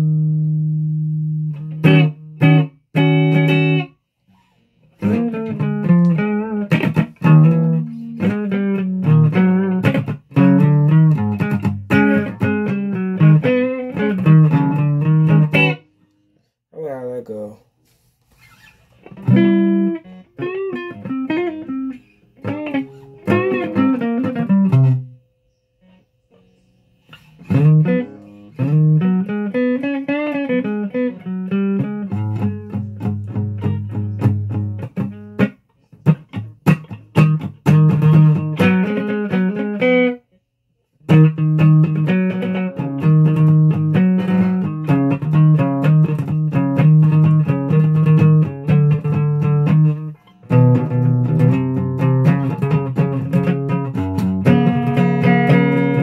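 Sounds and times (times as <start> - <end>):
guitar playing: 0.0 - 16.5, 18.5 - 56.0.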